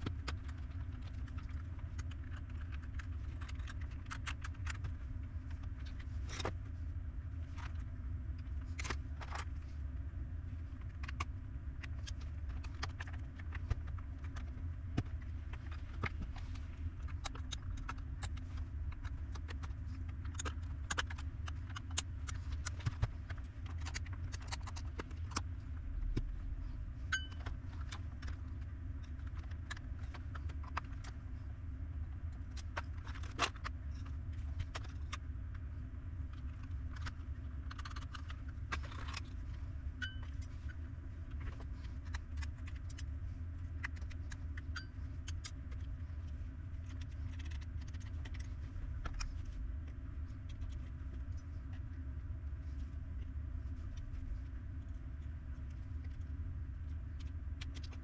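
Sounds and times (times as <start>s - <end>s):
steady low hum: 0.0s - 58.0s
tools clicking and tapping: 27.1s - 27.5s.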